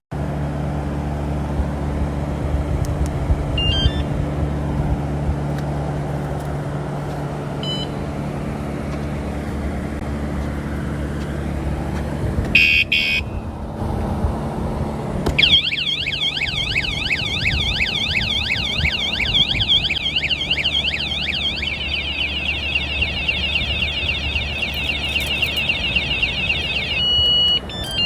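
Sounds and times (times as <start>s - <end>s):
vehicle engine running: 0.2s - 28.0s
bike alarm electronic chirps: 3.6s - 4.1s, 12.6s - 13.3s, 15.4s - 28.0s
faint short beeps: 22.8s - 28.0s.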